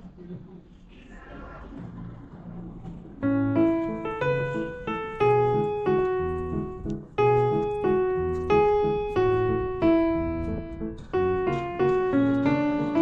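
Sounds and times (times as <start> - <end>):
gentle piano music: 2.9 - 13.0.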